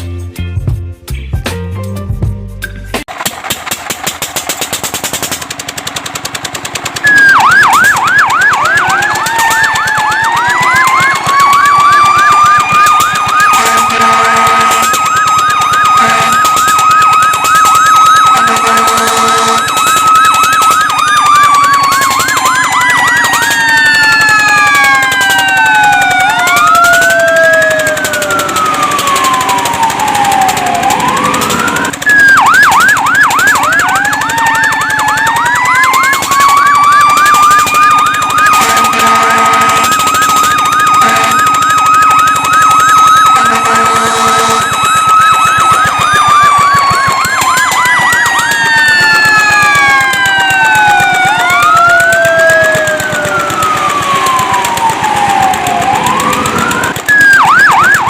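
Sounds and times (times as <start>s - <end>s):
fire truck siren wailing and yelping: 3.1s - 58.0s
second siren tone: 7.0s - 53.6s, 54.2s - 58.0s
horn blasts: 13.5s - 15.2s, 15.8s - 16.6s, 18.2s - 19.9s, 38.5s - 40.2s, 41.0s - 41.7s, 43.1s - 44.9s.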